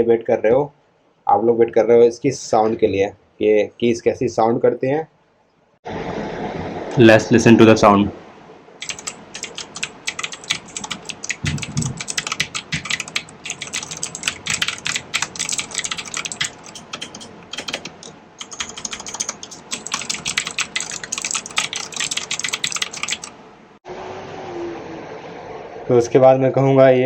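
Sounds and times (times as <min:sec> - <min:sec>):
clicky mechanical keyboard typing: 0:08.8 - 0:23.4.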